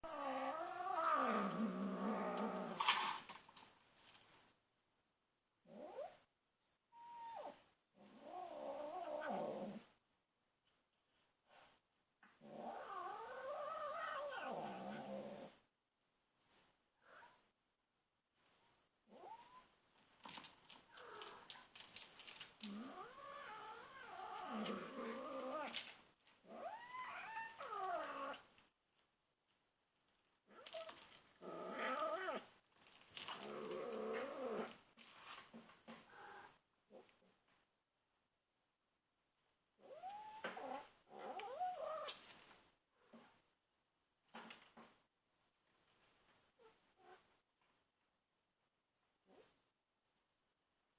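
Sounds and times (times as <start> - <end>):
kitten growling: 0.0 - 3.1, 8.0 - 9.8, 12.4 - 15.6, 22.6 - 25.8, 31.4 - 32.5.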